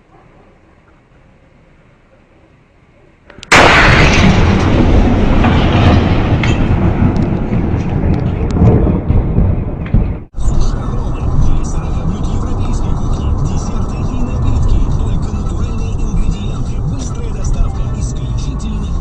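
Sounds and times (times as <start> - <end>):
heavy rumbling roar: 3.5 - 19.0
loud boom: 3.5 - 19.0.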